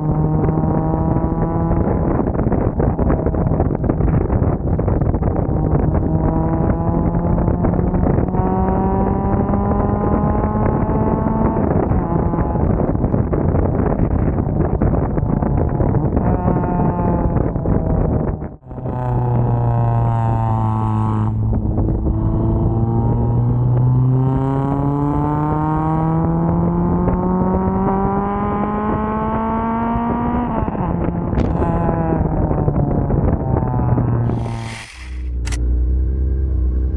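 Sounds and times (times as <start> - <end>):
wind buffeting microphone: 0.0 - 19.7.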